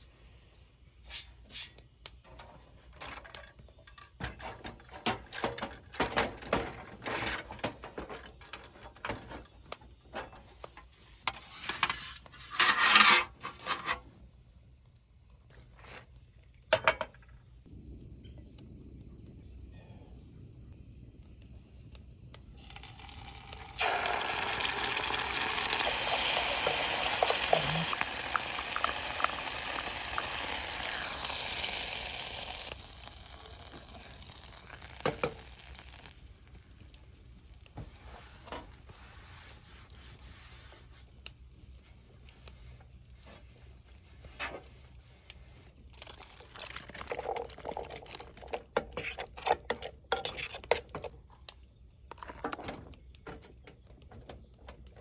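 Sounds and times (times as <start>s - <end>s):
loud sizzling hiss: 17.7s - 44.3s.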